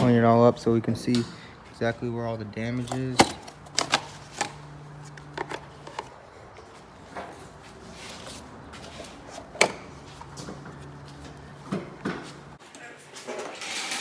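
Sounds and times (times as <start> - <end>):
knocks and clatter of car parts: 2.7 - 12.6.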